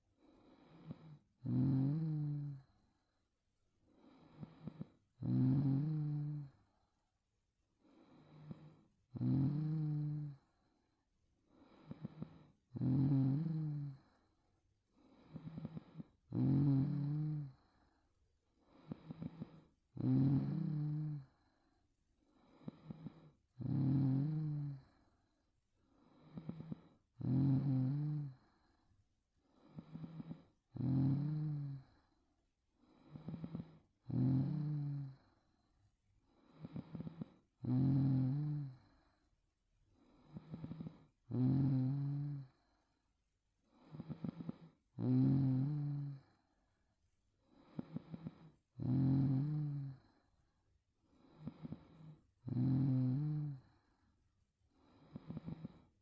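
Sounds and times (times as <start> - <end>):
woman snoring: 0.3 - 2.9, 4.0 - 6.7, 7.9 - 10.5, 11.6 - 14.2, 15.0 - 17.9, 18.7 - 21.5, 22.4 - 25.0, 26.0 - 28.9, 29.5 - 32.1, 32.9 - 35.6, 36.4 - 39.2, 40.0 - 42.8, 43.7 - 46.4, 47.5 - 50.3, 51.2 - 53.9, 54.8 - 56.0.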